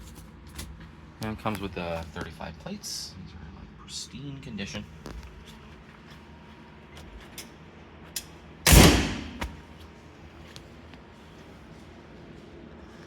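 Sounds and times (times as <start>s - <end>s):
loud thump: 8.7s - 9.6s.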